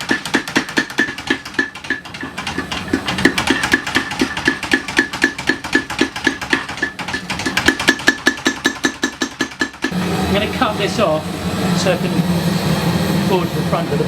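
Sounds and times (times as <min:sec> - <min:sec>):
power hammer striking hot steel: 0:00.0 - 0:11.0.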